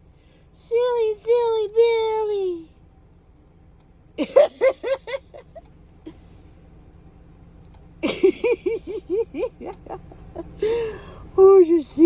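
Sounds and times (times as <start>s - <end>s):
woman laughing: 4.2s - 5.6s, 8.0s - 11.0s.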